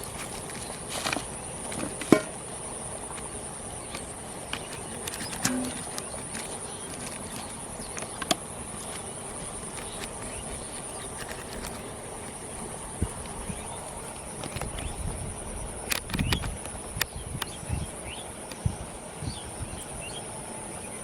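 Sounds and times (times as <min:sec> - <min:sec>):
insects droning: 0:00.0 - 0:21.0
sharp click: 0:15.9 - 0:17.6.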